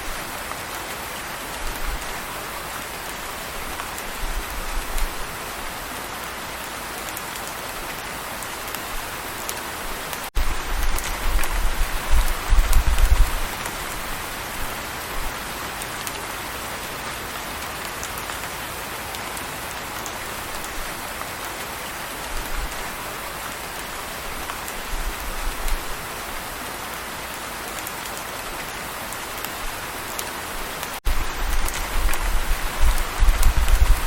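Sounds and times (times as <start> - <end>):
steady rain hiss: 0.0 - 34.0
raindrop ticks: 8.4 - 13.9, 30.2 - 34.0.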